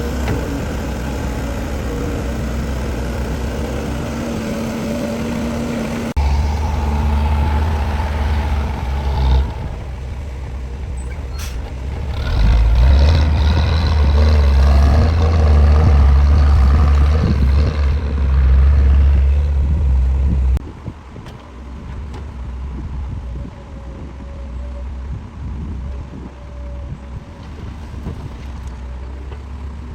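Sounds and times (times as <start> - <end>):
diesel machinery rumbling under load: 0.0 - 29.9.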